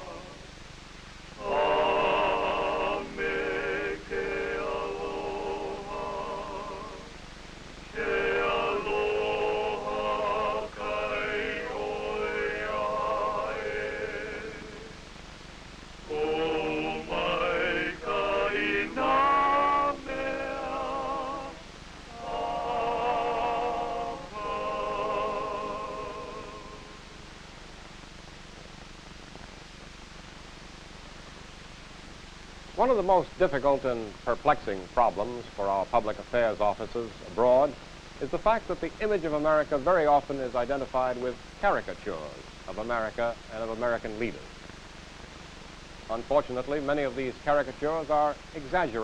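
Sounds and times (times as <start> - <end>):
singers performing a hymn: 0.0 - 0.6, 1.4 - 15.1, 16.0 - 27.3.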